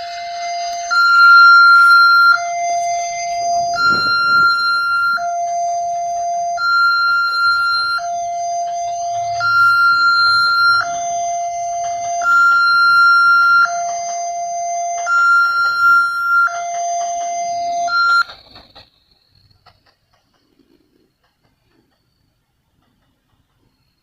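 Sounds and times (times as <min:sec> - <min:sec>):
level crossing two-tone siren: 0:00.0 - 0:18.3.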